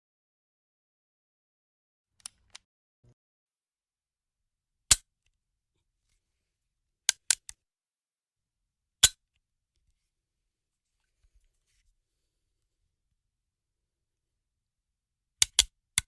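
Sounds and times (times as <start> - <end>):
sharp clicks: 15.4 - 16.0.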